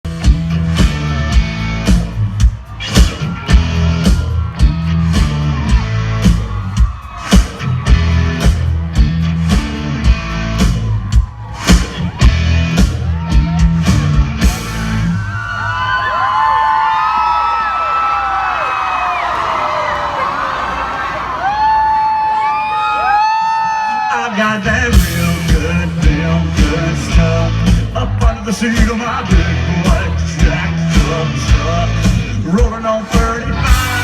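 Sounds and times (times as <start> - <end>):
heavy drum beat: 0.0 - 15.2, 24.8 - 34.0
live country-rock band: 0.1 - 15.9, 23.9 - 34.0
crowd cheering and screaming: 0.9 - 34.0
person singing: 24.1 - 34.0.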